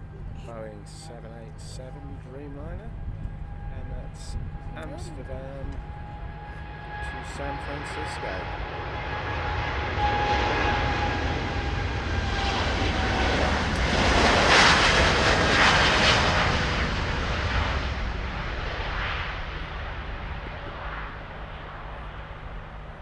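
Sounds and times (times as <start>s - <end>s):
faint engine whine: 0.0s - 23.0s
jet airliner taking off: 0.0s - 23.0s.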